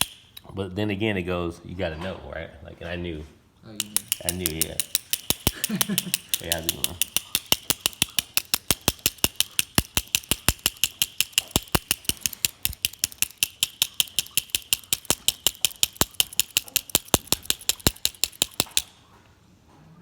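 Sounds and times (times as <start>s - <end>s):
lock cylinder tapped on ground: 3.8s - 19.0s.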